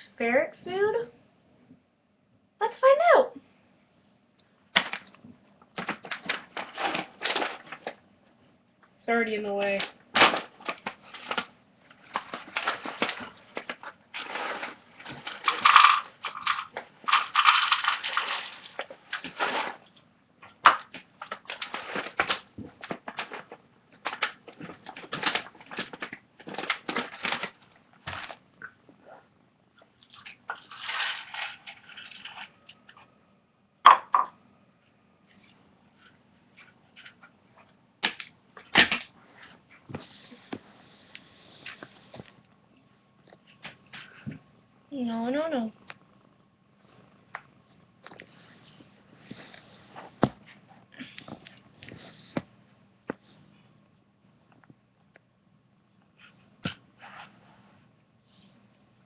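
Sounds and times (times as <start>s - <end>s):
cat crunching food: 45.8s - 48.5s.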